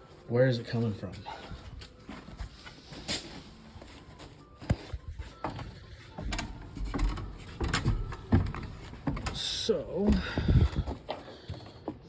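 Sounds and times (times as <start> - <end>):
clicks and knocks of handling: 5.4 - 9.4.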